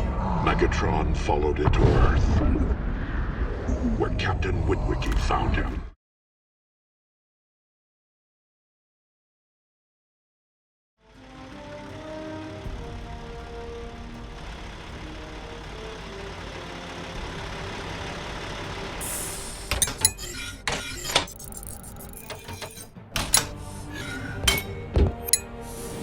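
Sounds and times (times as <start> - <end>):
background music: 11.0 - 20.6, 22.7 - 26.0
sharp clinks and knocks: 24.4 - 25.6.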